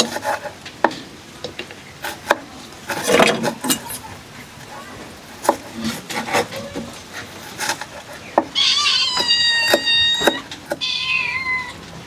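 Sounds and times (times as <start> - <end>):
animal crying: 8.5 - 11.9.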